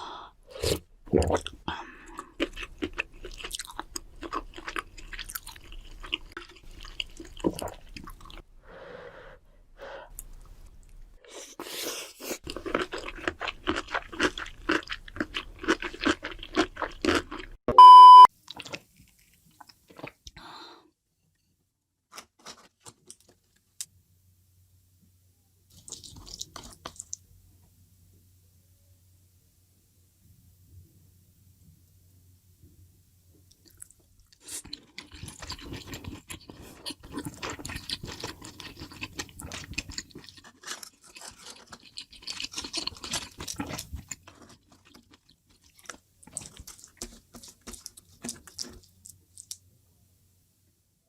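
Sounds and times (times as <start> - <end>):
chewing and crunching food: 0.5 - 8.5, 10.1 - 17.6, 18.4 - 20.4, 22.1 - 23.9, 25.7 - 27.3, 33.4 - 49.7
loud steady beep: 17.7 - 18.3.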